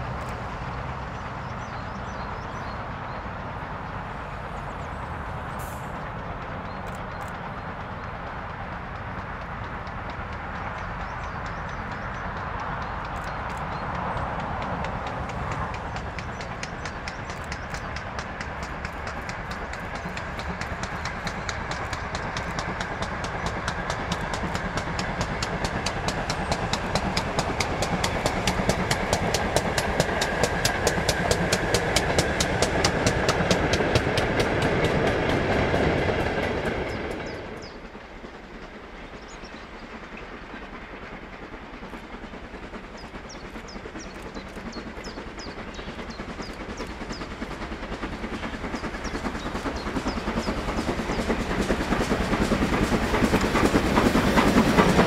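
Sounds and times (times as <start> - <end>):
train wheels clattering: 0.0 - 55.0
scattered clicks: 8.5 - 37.3, 43.0 - 55.0.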